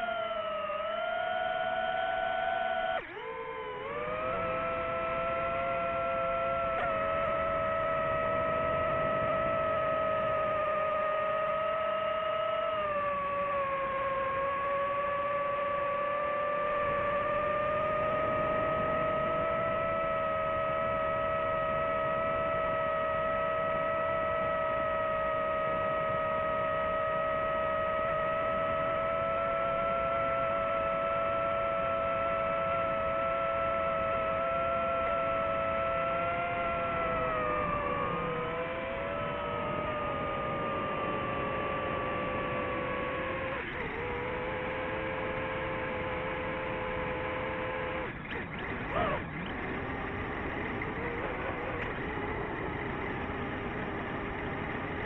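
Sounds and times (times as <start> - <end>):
drone motors whining: 0.0 - 55.0.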